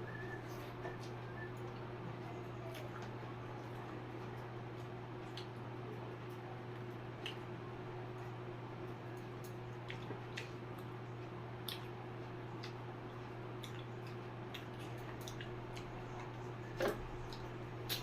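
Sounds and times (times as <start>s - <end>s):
electric fan humming: 0.0s - 18.0s
chewing and smacking: 0.1s - 18.0s.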